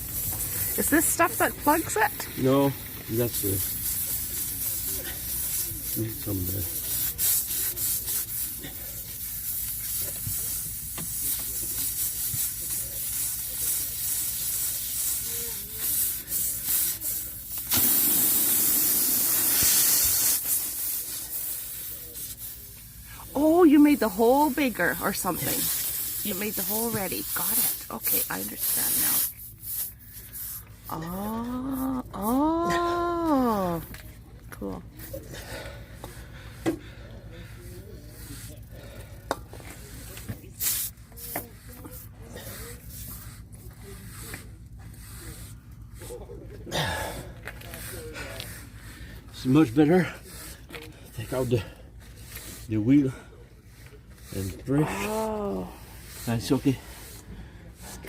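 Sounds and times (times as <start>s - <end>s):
loud hissing rasp at tire: 0.0s - 33.9s, 34.9s - 58.0s
short loud air hiss: 17.6s - 21.4s.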